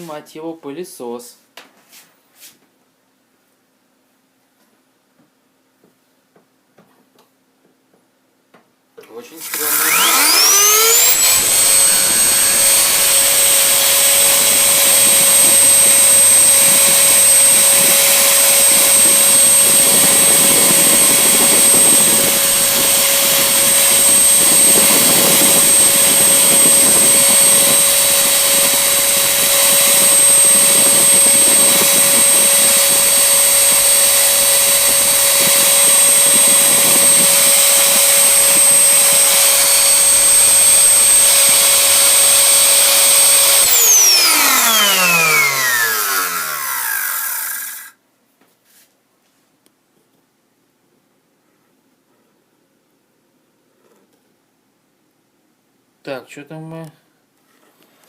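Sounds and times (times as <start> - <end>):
vacuum cleaner motor running: 9.4 - 48.0.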